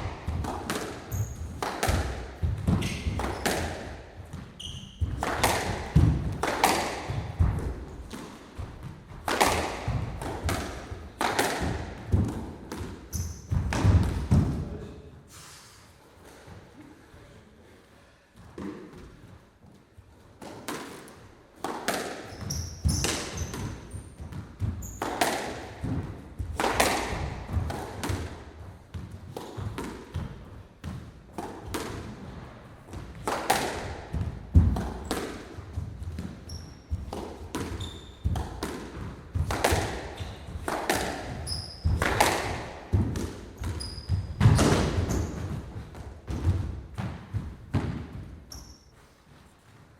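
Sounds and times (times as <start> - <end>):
racket striking ball: 0.0 - 14.6, 20.4 - 28.4, 29.0 - 32.3, 32.9 - 48.3
ball hitting walls: 0.0 - 14.8, 20.4 - 48.8
shoe squeaks: 1.1 - 1.6, 2.7 - 3.6, 4.6 - 5.2, 13.1 - 13.6, 22.2 - 25.1, 36.4 - 37.0, 37.7 - 38.3, 40.1 - 40.5, 41.4 - 42.1, 43.6 - 45.5, 48.5 - 49.3.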